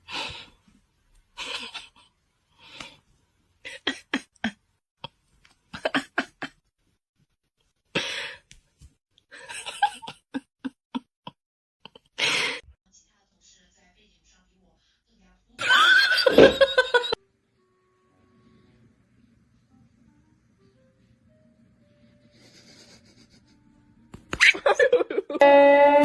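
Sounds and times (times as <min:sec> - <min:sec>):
person laughing: 0:15.7 - 0:17.2, 0:22.4 - 0:23.6, 0:24.4 - 0:25.4.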